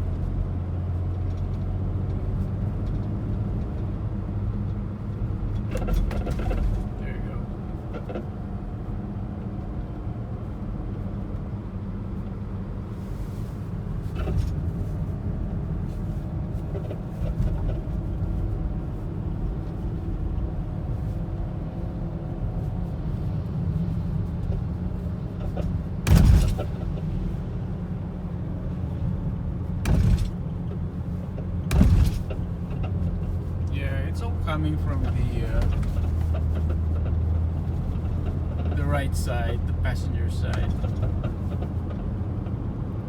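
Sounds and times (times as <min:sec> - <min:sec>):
low road rumble: 0:00.0 - 0:43.0
suspension clunks: 0:04.5 - 0:08.4, 0:13.2 - 0:21.5, 0:23.0 - 0:42.9.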